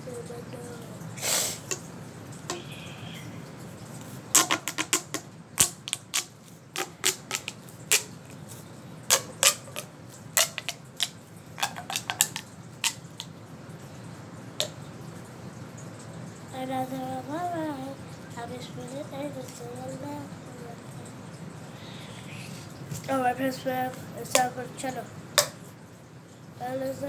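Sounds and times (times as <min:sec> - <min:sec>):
plastic fidget toy clicking: 0:04.3 - 0:13.3.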